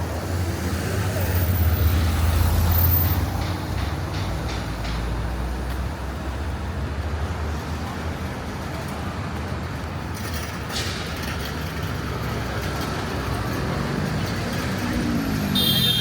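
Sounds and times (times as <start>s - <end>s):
road traffic rumble: 0.0s - 16.0s.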